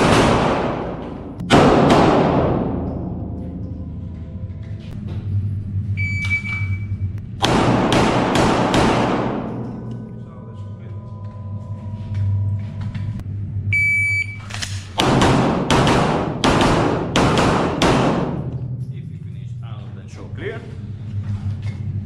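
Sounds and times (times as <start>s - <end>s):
electronic timer beep: 6.0s - 7.0s, 13.7s - 14.4s.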